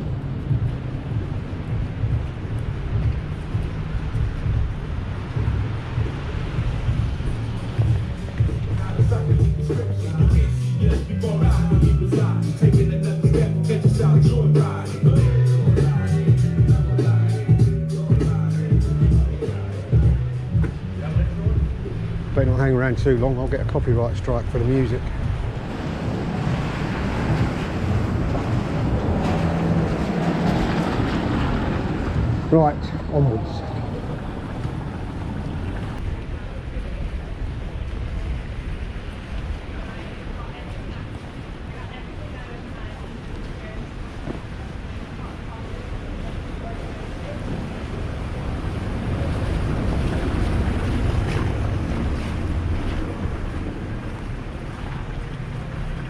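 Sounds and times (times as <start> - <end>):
wind buffeting microphone: 0.0 - 11.0, 19.1 - 56.0
heavy rain: 0.0 - 56.0.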